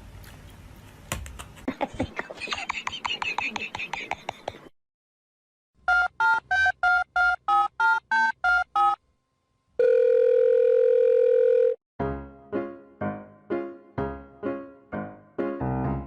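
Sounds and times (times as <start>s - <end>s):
long steady telephone tone: 9.7s - 11.8s
piano music: 12.0s - 16.0s.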